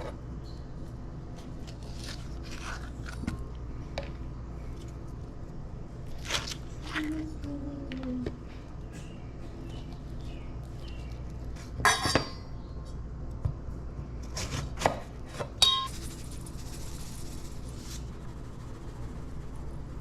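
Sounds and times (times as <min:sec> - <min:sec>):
dishes and utensils clinking: 0:11.8 - 0:12.5, 0:15.6 - 0:15.9.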